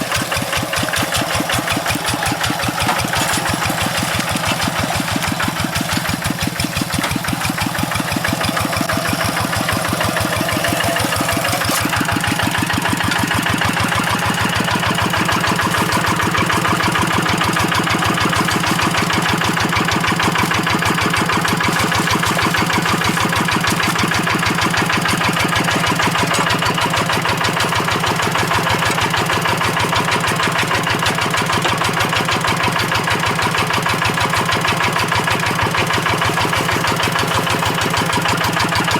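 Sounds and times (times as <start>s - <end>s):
single-cylinder diesel engine running: 0.0s - 38.9s.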